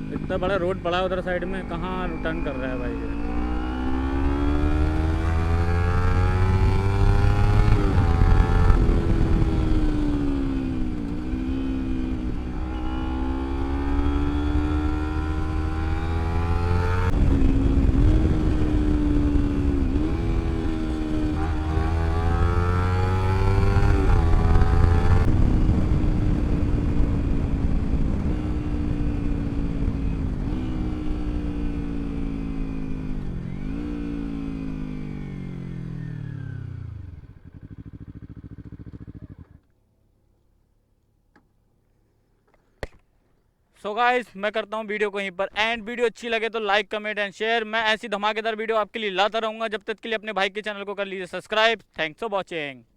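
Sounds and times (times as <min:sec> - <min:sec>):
motorcycle engine accelerating: 0:00.0 - 0:39.8.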